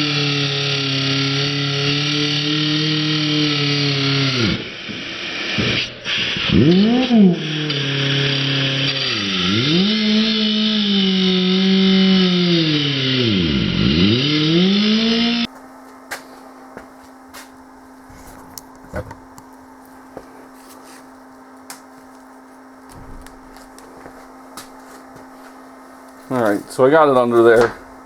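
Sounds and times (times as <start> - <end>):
power tool motor running: 0.0 - 15.5
faint steady hum: 0.0 - 28.0.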